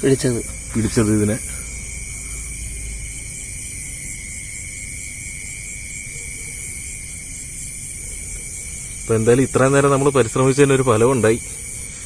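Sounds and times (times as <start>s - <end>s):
shrill insect chorus: 0.0s - 12.0s.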